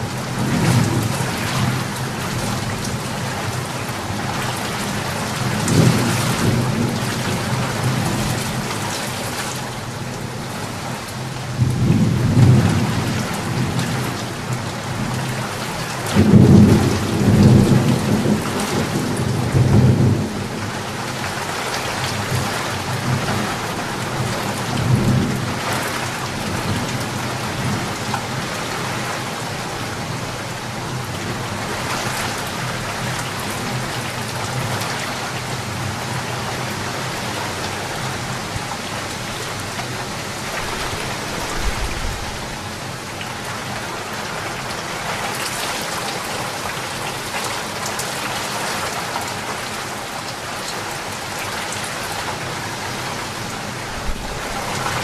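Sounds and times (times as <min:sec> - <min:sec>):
steady rain: 0:00.0 - 0:55.0
rolling thunder: 0:40.5 - 0:42.8.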